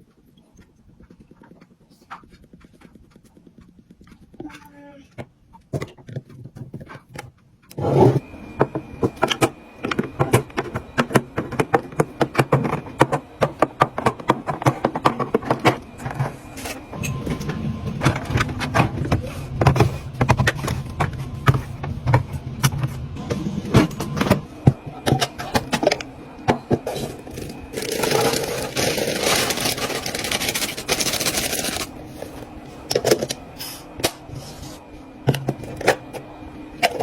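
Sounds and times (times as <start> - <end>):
low steady hum: 0.0 - 37.0
containers and bottles clattering: 25.0 - 32.0.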